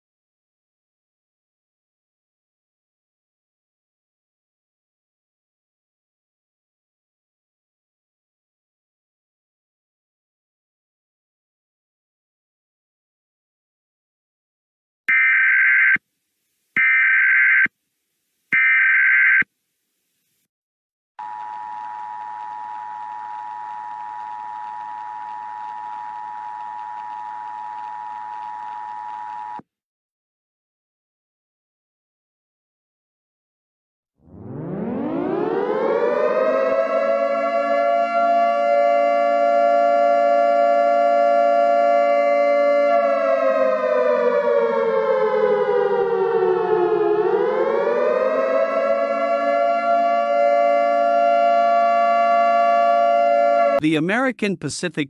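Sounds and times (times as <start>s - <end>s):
warning siren: 15.1s - 16.0s, 16.8s - 17.7s, 18.6s - 19.4s, 21.2s - 29.6s, 34.2s - 53.8s.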